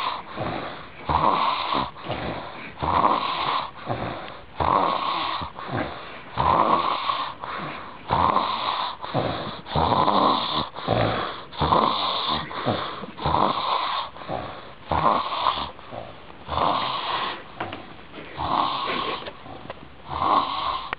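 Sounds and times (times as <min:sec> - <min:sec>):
faint breathing: 0:00.0 - 0:20.9
person snoring: 0:00.0 - 0:20.9.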